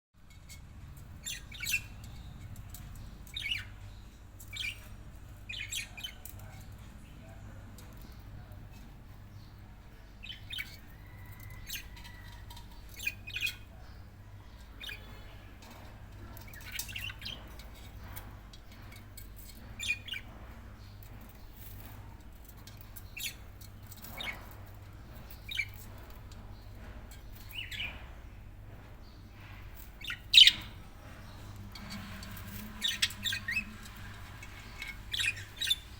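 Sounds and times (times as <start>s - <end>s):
steady low hum: 0.2s - 35.9s
budgerigar chirping and squawking: 30.0s - 30.8s.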